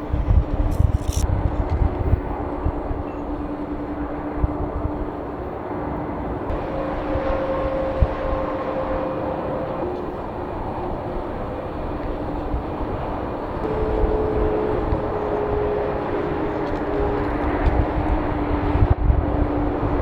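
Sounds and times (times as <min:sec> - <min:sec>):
jet engines passing: 0:00.0 - 0:20.0
low buffeting thumps: 0:06.5 - 0:20.0.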